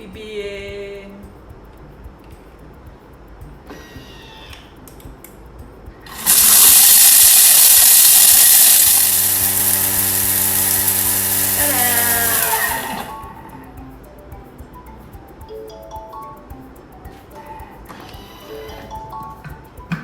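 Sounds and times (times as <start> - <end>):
appliance grinding coffee beans: 6.1 - 13.3.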